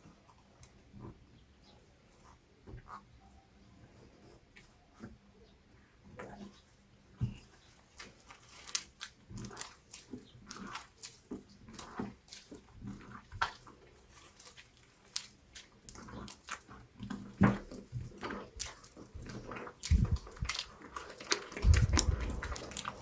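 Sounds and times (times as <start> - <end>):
slime squelching: 6.1 - 23.0.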